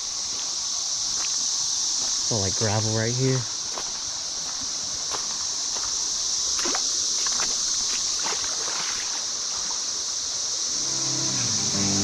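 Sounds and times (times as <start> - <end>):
cicada chorus drone: 0.0 - 12.0
footsteps on gravel: 0.3 - 2.3, 3.5 - 9.0.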